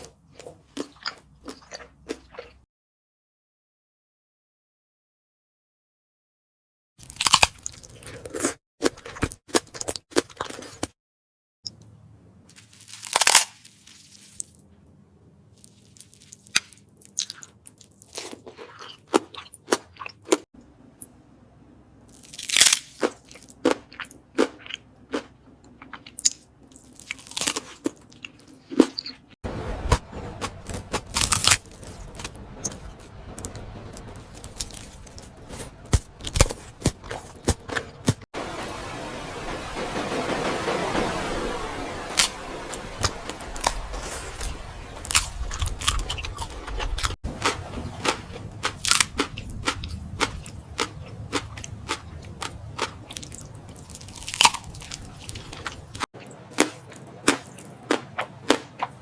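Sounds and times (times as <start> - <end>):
person chewing and crunching: 0.0 - 2.6, 7.0 - 10.9, 15.6 - 20.5, 22.1 - 38.3, 43.6 - 59.0.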